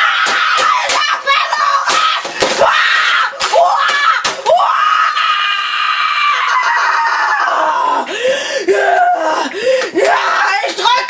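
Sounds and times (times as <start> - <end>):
boy yelling: 0.0 - 2.2
boy screaming: 0.0 - 8.1.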